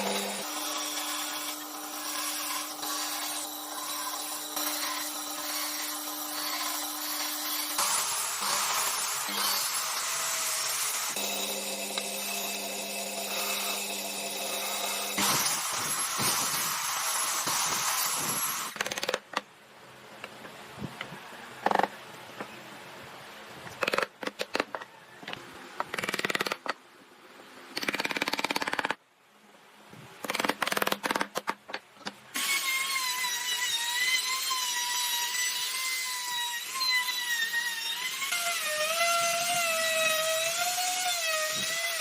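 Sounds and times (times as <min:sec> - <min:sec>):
tool noise bursts: 0:00.0 - 0:19.2.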